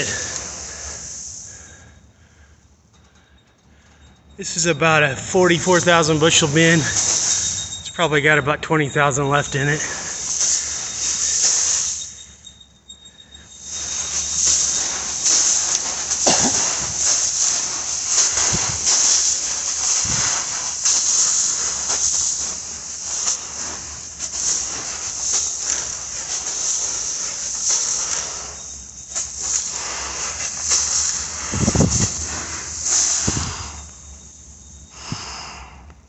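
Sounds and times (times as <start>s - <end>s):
grain hissing and rustling: 0.0s - 2.2s, 4.4s - 35.9s
footsteps crunching in grain: 8.2s - 12.0s, 13.6s - 34.2s.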